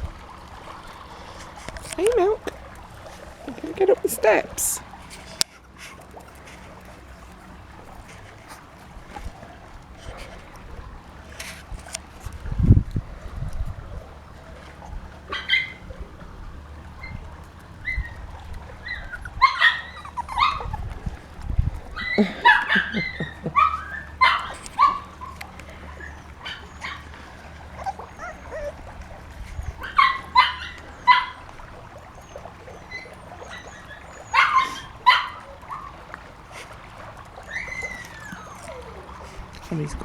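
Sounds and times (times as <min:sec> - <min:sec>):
puppies yelping and whimpering: 0:14.7 - 0:16.1, 0:16.9 - 0:39.6.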